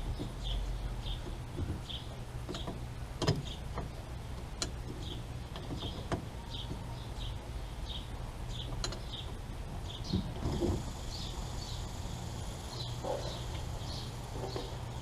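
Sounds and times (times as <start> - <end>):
low steady hum: 0.0 - 15.0
hand tools clicking and knocking: 8.6 - 9.4.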